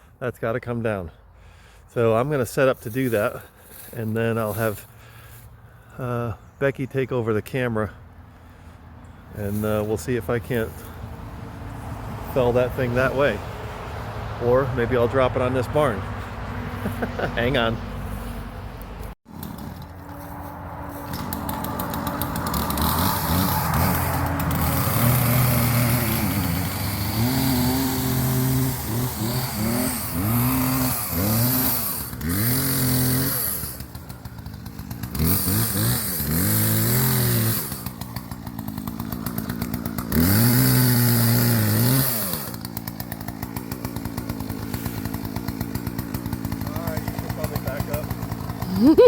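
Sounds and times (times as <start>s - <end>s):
chainsaw revving: 11.9s - 17.7s, 19.3s - 49.0s.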